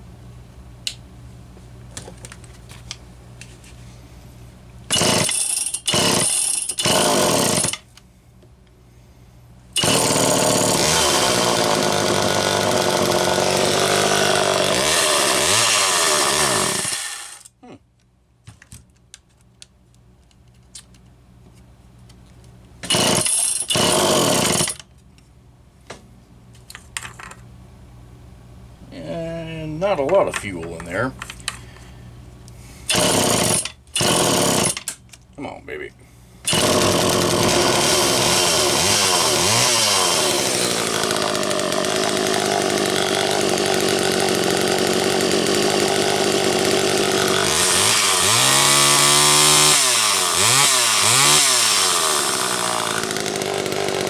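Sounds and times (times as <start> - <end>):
chainsaw engine firing and revving: 4.9 - 7.8, 9.8 - 17.5, 22.9 - 24.8, 32.9 - 34.9, 36.5 - 54.0.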